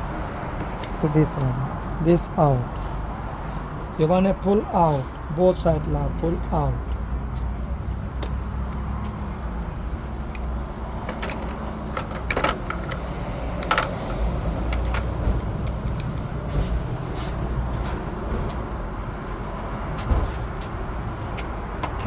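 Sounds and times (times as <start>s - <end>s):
low engine rumble: 0.0s - 22.0s
hand tools clicking and tapping metal: 10.2s - 17.4s.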